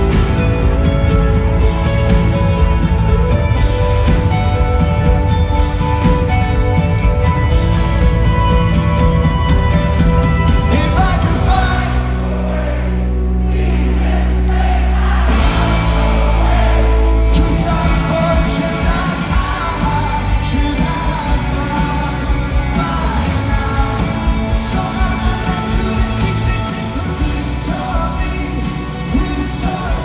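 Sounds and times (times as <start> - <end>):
live rock band: 0.0 - 30.0
lead vocal singing: 10.5 - 30.0.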